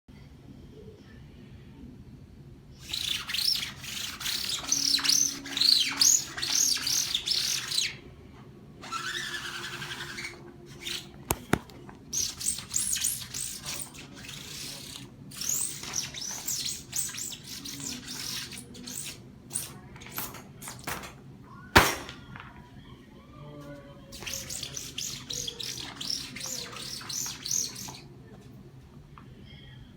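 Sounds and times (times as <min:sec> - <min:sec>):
rapid bird-like chirps: 0:24.2 - 0:28.0.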